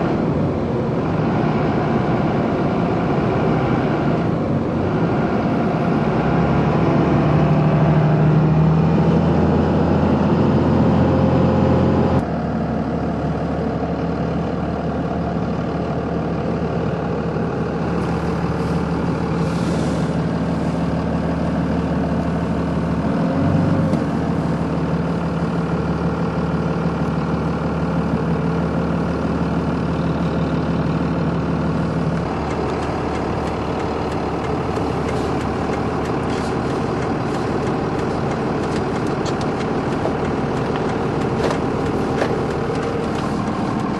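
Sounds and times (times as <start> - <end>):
vehicle engine droning: 0.0 - 43.9.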